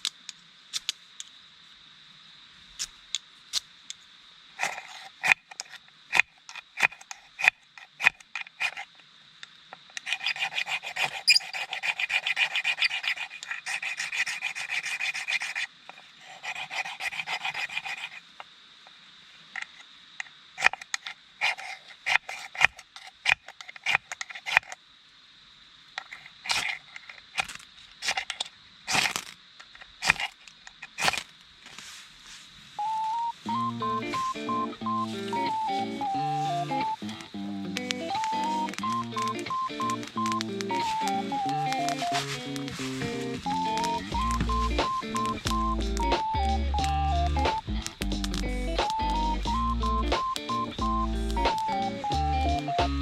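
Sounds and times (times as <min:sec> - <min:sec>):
sharp scraping strokes: 0:04.6 - 0:06.2, 0:10.0 - 0:18.4, 0:21.4 - 0:22.8, 0:37.8 - 0:46.3.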